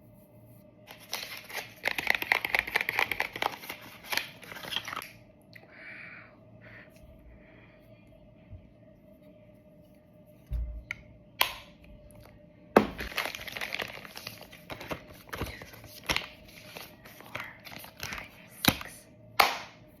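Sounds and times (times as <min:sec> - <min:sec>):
packaging crinkling and tearing: 0:00.9 - 0:05.2, 0:12.8 - 0:19.0.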